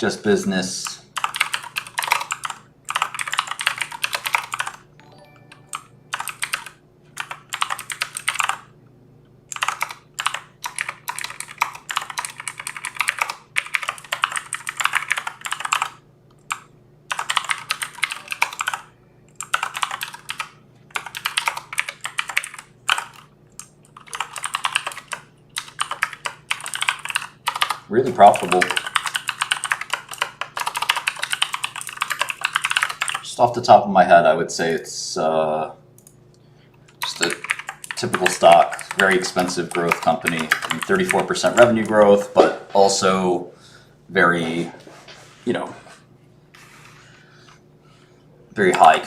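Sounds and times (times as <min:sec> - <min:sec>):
keyboard typing: 0:01.2 - 0:08.7, 0:09.5 - 0:33.3, 0:36.9 - 0:42.0.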